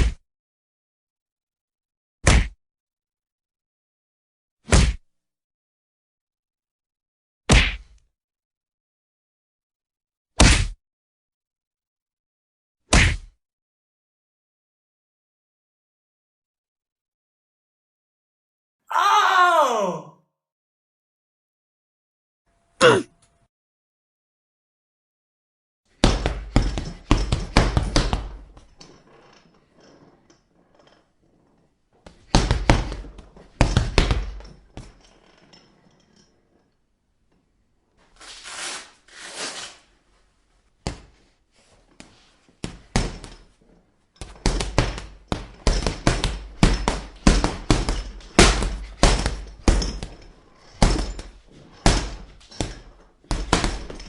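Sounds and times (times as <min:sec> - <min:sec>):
punches thudding on punching bag: 0:02.2 - 0:02.6, 0:04.7 - 0:05.0, 0:07.5 - 0:07.9, 0:10.4 - 0:10.8, 0:12.9 - 0:13.4, 0:26.0 - 0:28.7, 0:32.0 - 0:35.0, 0:42.6 - 0:43.5, 0:44.2 - 0:54.0.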